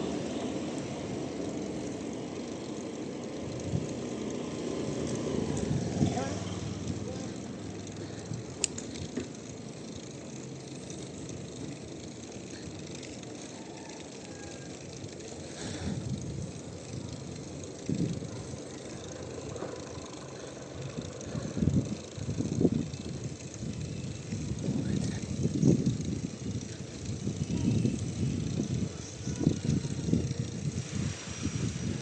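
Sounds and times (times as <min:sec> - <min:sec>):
bicycle bumps: 0:00.0 - 0:32.0
bicycle rolling with rattles: 0:00.0 - 0:32.0.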